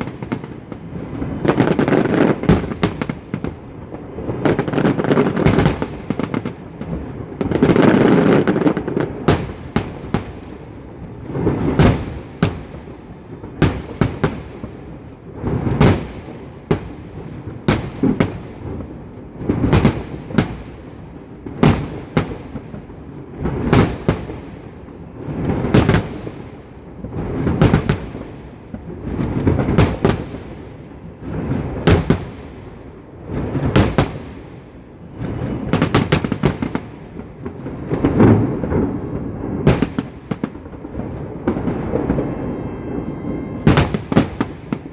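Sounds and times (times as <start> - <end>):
fireworks bursting with echo: 0.0 - 44.9.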